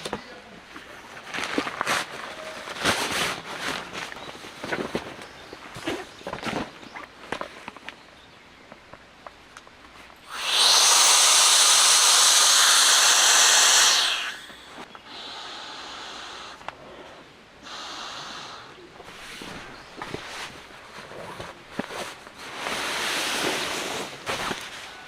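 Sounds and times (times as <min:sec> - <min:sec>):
hissing: 0:10.2 - 0:16.7.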